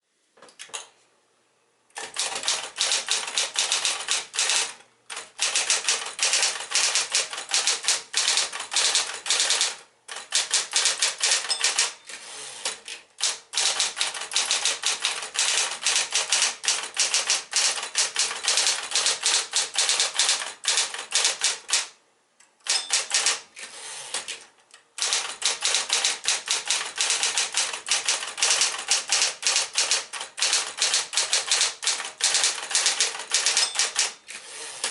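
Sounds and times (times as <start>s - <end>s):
electric typewriter typing: 2.0s - 22.0s, 22.6s - 34.9s.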